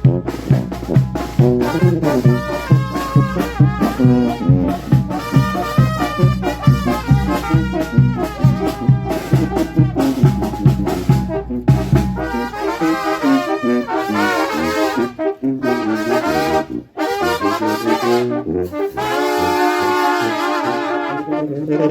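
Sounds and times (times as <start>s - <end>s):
low oom-pah bass beat: 0.0s - 12.7s
brass band playing: 0.0s - 21.9s.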